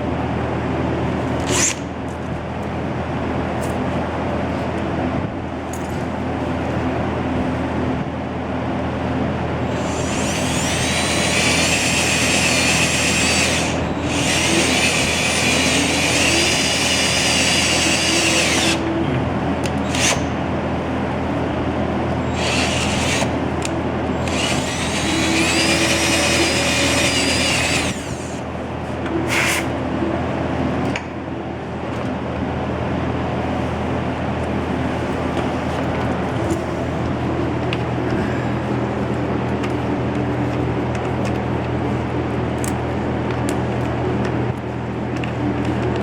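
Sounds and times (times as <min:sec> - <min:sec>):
power drill whining: 0:09.8 - 0:18.8, 0:22.3 - 0:23.3, 0:24.2 - 0:28.4.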